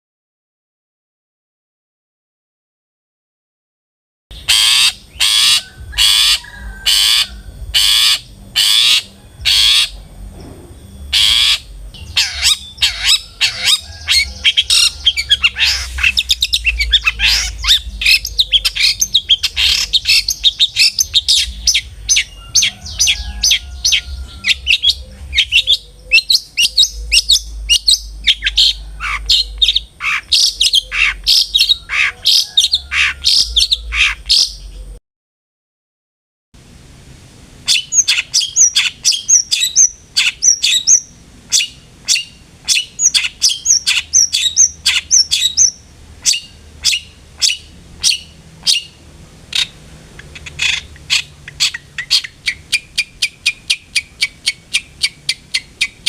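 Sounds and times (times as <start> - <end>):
shrike harsh rasping calls: 4.3 - 10.0, 11.0 - 34.6
bird sharp chattering notes: 10.8 - 34.9, 37.7 - 56.0.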